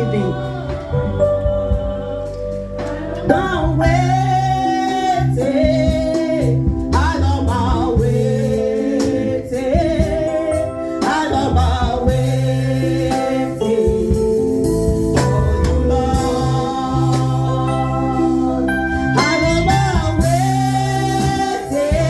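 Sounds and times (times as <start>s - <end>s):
instrumental backing with chords: 0.0s - 22.0s.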